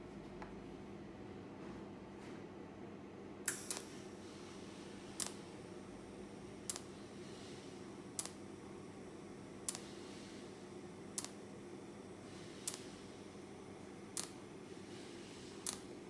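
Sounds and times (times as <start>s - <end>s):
welder arc snaps: 3.5s - 4.0s, 5.2s - 5.4s, 6.6s - 7.0s, 8.2s - 8.4s, 9.6s - 9.9s, 11.1s - 11.4s, 12.6s - 13.0s, 14.1s - 14.4s, 15.6s - 15.9s.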